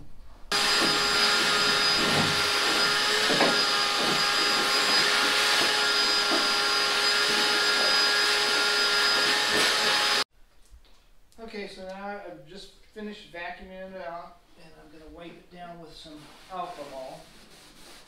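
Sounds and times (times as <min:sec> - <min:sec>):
vacuum cleaner whining: 0:00.5 - 0:10.3.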